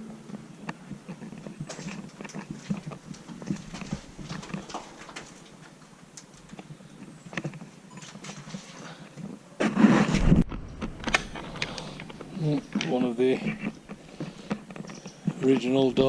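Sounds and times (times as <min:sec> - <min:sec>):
footsteps scuffing and knocking: 0:00.7 - 0:06.0, 0:09.6 - 0:16.0.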